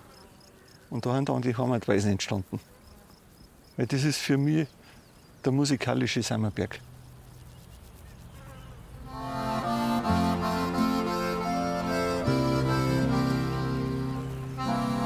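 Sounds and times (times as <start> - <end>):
accordion playing slow chords: 9.0 - 15.0.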